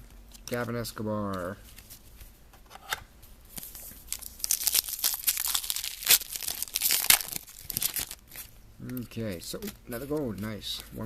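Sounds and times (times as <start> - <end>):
card pack wrapper crinkling and tearing: 3.6 - 11.0.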